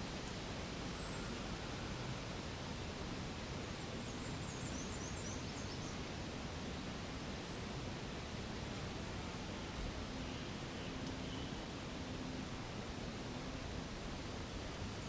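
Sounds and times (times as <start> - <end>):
outdoor background hiss: 0.0 - 15.0.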